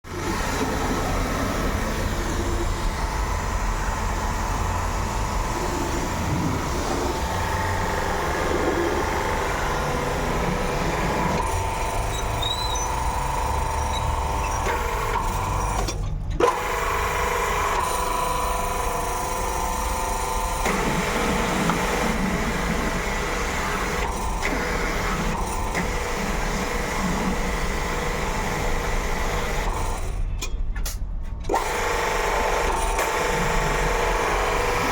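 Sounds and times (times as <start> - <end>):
machinery low rumble: 0.1 - 12.1
machinery whine: 0.1 - 30.5.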